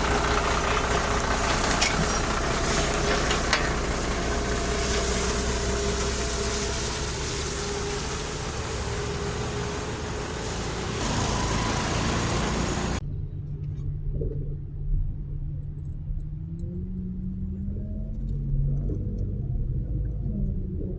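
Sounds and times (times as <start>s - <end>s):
truck engine rumbling: 0.0s - 13.4s.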